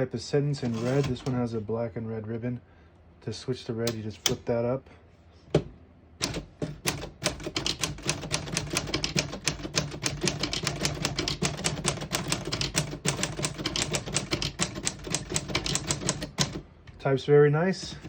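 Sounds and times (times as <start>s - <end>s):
typewriter typing: 6.2s - 16.6s.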